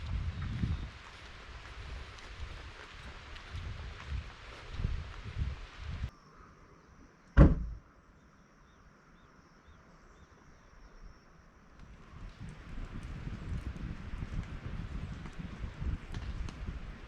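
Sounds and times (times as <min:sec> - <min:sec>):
van door shutting: 0:07.4 - 0:07.8.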